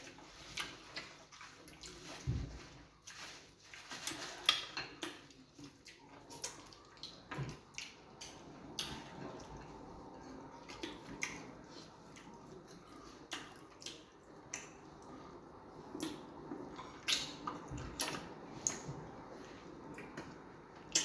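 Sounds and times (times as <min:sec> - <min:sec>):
mouths chewing wetly: 0:04.3 - 0:21.0.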